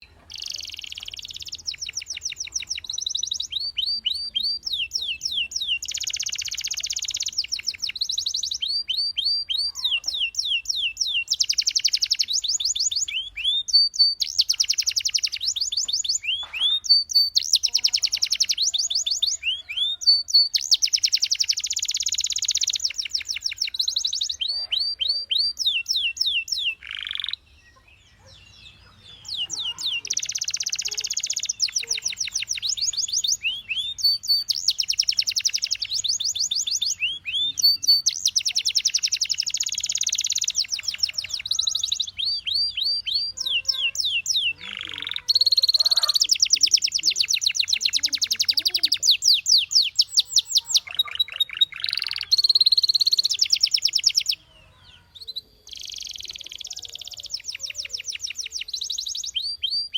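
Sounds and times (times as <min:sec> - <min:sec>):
canary singing: 0:00.0 - 0:59.9.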